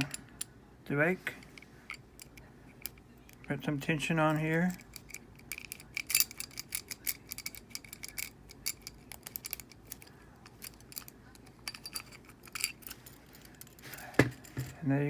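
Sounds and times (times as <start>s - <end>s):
lock pick metallic clicks and scrapes: 1.4s - 14.8s.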